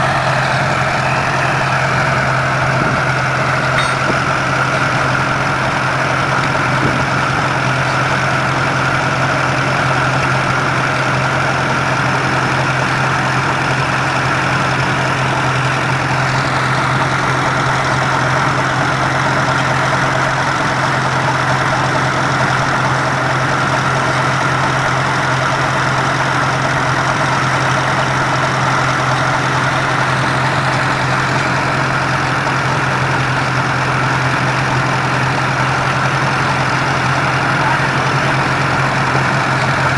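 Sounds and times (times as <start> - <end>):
tractor engine idling: 0.0 - 39.9.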